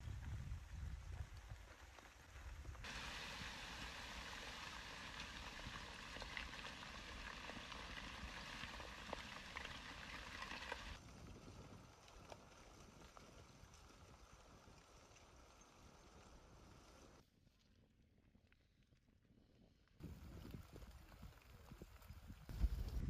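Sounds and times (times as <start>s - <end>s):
lava hissing and popping: 0.1s - 17.2s.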